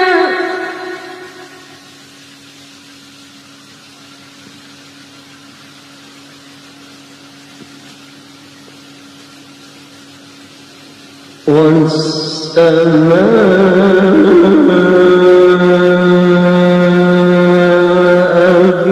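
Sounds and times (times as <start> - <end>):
person reciting melodically: 0.0 - 1.7, 11.4 - 18.9
faint hum and hiss: 0.0 - 18.9.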